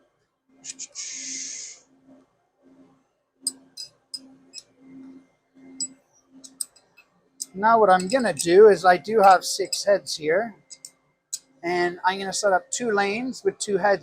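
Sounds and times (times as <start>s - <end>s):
short hiss: 0.7s - 1.8s
light metallic clicks and clinks: 5.8s - 8.6s.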